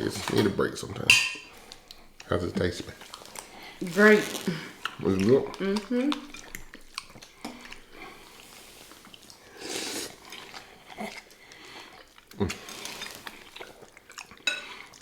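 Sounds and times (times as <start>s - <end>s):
chewing and slurping: 1.5s - 15.0s.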